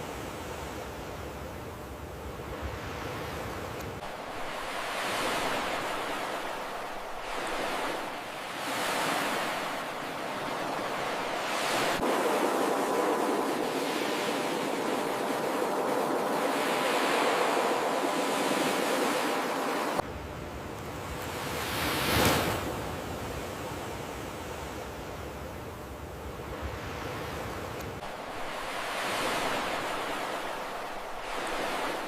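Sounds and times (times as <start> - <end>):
ocean waves breaking: 2.3 - 20.0, 26.4 - 32.0.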